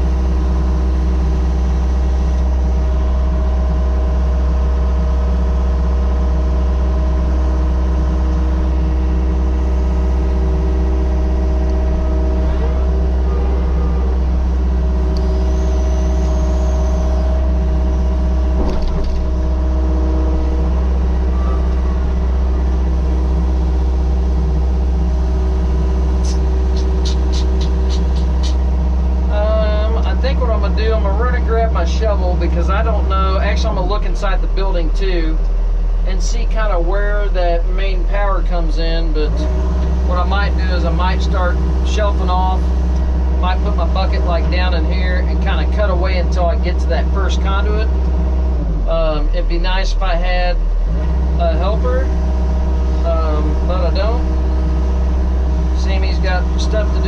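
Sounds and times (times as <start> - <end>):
excavator diesel engine running: 0.0 - 57.0
brief high whine: 8.6 - 24.2
sharp knock: 18.6 - 19.3.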